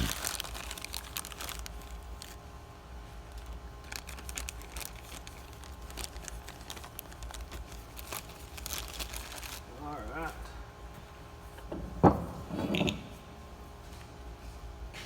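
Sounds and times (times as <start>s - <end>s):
plastic packaging crinkling: 0.0s - 2.4s, 3.1s - 10.2s
steady low hum: 0.0s - 15.0s.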